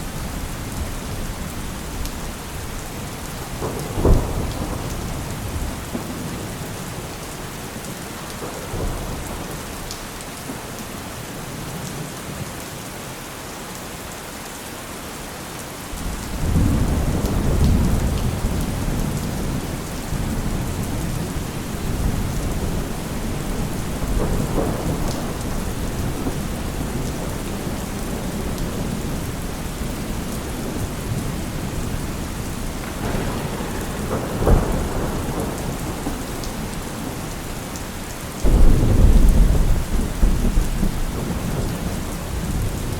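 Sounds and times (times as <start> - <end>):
heavy rain falling: 0.0 - 42.9
low roll of thunder: 0.1 - 7.2, 16.0 - 42.9
sharp thunderclap: 3.4 - 7.0, 16.0 - 37.7, 38.4 - 42.9.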